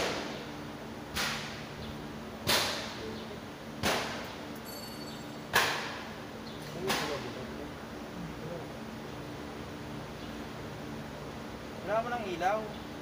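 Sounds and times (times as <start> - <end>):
steady low hum: 0.0 - 13.0
sharp cracks with hiss: 1.1 - 1.6, 2.4 - 3.0.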